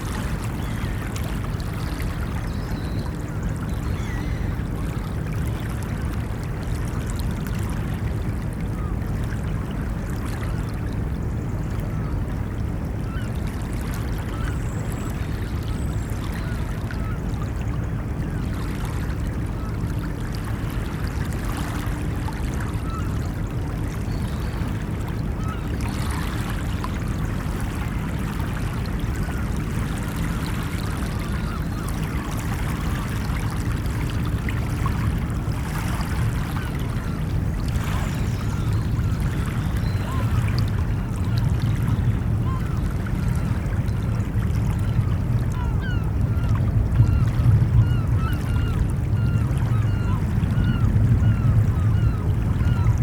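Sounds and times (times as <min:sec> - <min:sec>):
waves washing: 0:15.4 - 0:53.0.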